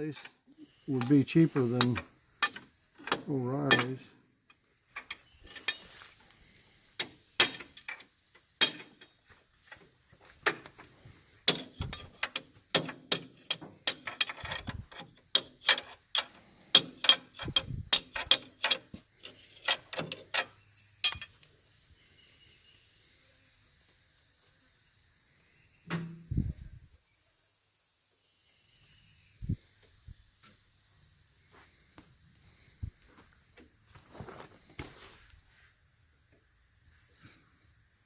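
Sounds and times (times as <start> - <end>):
hand tools clinking on metal: 0.1 - 6.1, 7.0 - 9.8, 11.4 - 21.5.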